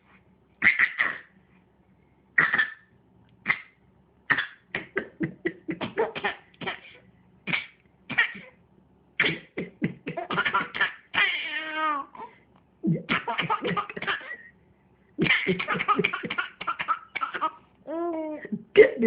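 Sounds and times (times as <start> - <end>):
baby fake coughing: 0.6 - 1.3, 2.4 - 2.9, 3.5 - 8.6, 9.2 - 12.3, 12.9 - 14.5, 15.2 - 17.6
adult fake coughing: 3.5 - 8.6, 9.2 - 11.3, 12.8 - 14.5, 15.2 - 17.6.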